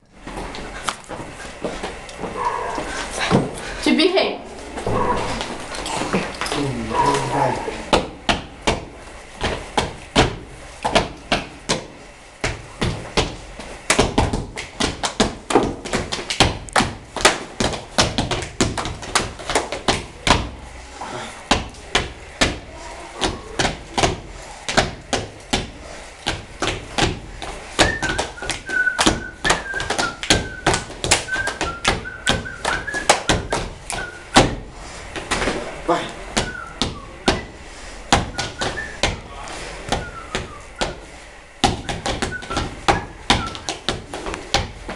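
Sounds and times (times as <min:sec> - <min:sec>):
body percussion taps and thuds: 0:07.9 - 0:20.6, 0:21.4 - 0:35.6, 0:36.3 - 0:44.9.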